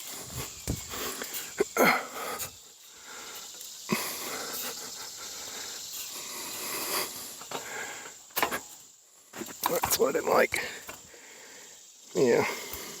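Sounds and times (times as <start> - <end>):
man breathing heavily: 0.0 - 8.3, 10.6 - 13.0
man talking: 9.6 - 10.8, 12.1 - 12.6.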